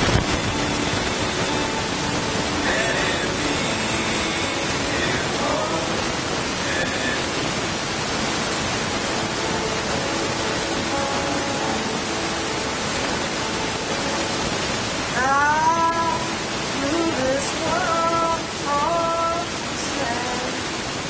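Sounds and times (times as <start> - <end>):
loud recording hiss: 0.0 - 21.0
person's voice: 15.2 - 20.7.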